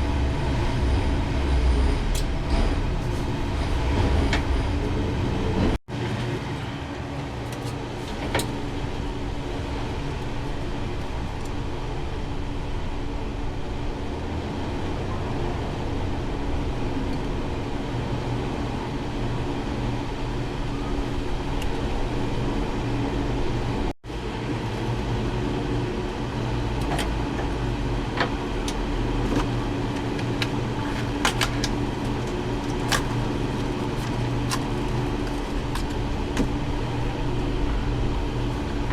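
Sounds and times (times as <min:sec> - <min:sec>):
electric fan humming: 0:00.0 - 0:15.0, 0:15.6 - 0:38.9
hand tools clicking and knocking: 0:07.2 - 0:08.6, 0:28.7 - 0:36.5.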